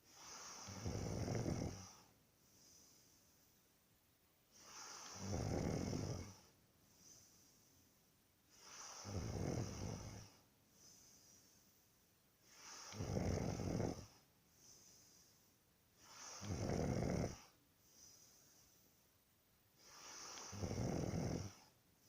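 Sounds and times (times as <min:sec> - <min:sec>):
quiet breaths: 0:00.0 - 0:22.0
person snoring: 0:00.1 - 0:03.1, 0:04.6 - 0:07.4, 0:08.5 - 0:11.4, 0:12.4 - 0:15.4, 0:16.0 - 0:18.7, 0:19.8 - 0:21.7.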